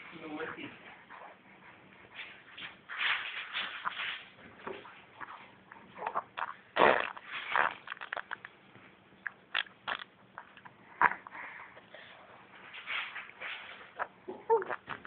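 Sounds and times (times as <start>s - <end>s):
baby making fart sounds with mouth: 6.0s - 8.4s, 9.5s - 11.2s, 14.0s - 15.0s.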